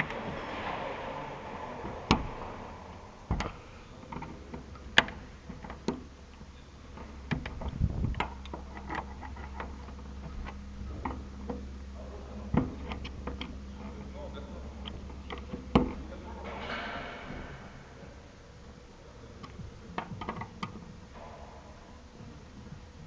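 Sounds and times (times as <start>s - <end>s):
faint low hum: 0.0s - 23.0s.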